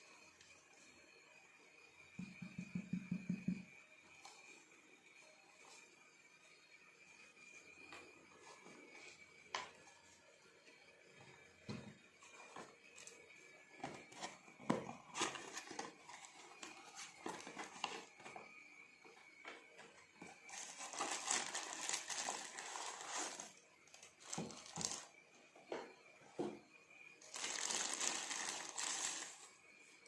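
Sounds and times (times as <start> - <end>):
faint high whine: 0.0 - 30.0
packaging crinkling: 20.5 - 25.1, 27.2 - 29.5.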